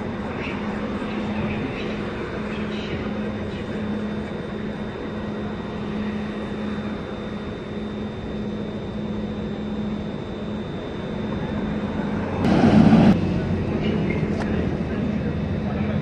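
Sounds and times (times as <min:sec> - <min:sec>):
faint high whine: 0:00.0 - 0:16.0
train rumbling: 0:11.3 - 0:15.9.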